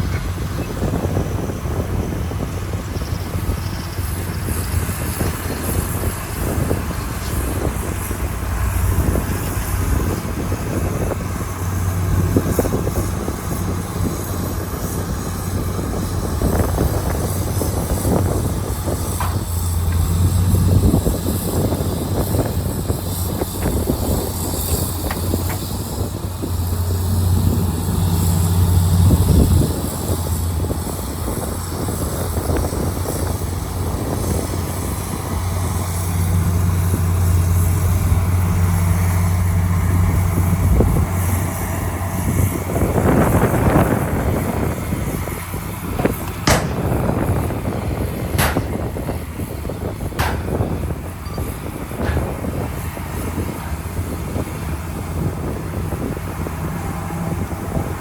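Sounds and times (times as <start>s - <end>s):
heavy diesel machinery running: 0.0s - 58.0s
brief metal clanks: 48.4s - 48.9s, 50.2s - 52.4s.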